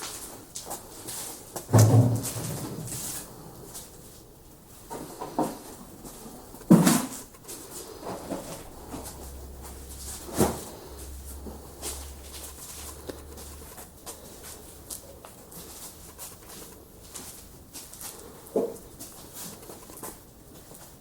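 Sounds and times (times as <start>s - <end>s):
wood fire crackling: 4.9s - 21.0s.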